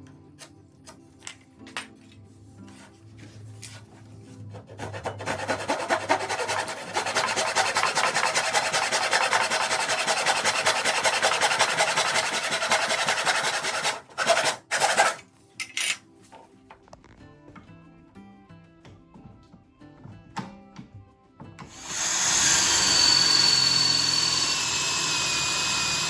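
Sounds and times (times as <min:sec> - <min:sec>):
sanding wood by hand: 0:04.6 - 0:15.2, 0:21.7 - 0:26.0.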